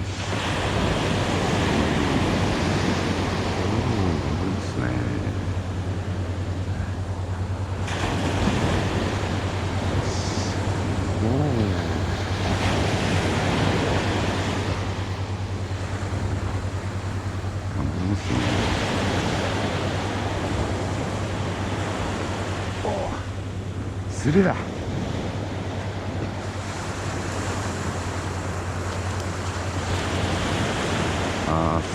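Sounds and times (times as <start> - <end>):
wind rumble on microphone: 0.0 - 22.8
surf breaking on a beach: 0.0 - 31.9.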